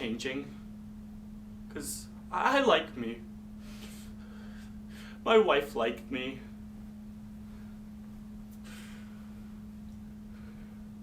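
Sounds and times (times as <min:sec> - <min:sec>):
faint room noise: 0:00.0 - 0:11.0
low electrical hum: 0:00.0 - 0:11.0
person breathing: 0:03.6 - 0:05.2, 0:08.5 - 0:11.0.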